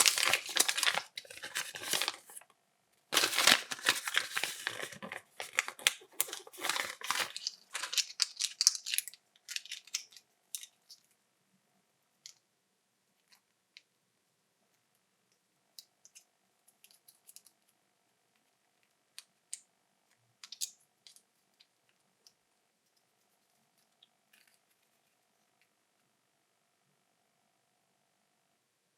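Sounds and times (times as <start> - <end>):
candy wrappers crinkling: 0.0 - 2.4, 3.2 - 11.0
plastic capsules clicking open: 7.2 - 10.7, 20.4 - 21.2.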